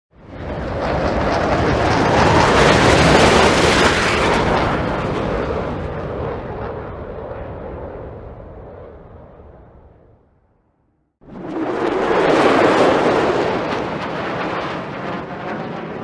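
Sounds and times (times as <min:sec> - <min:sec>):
long rumbling boom: 0:00.2 - 0:12.3.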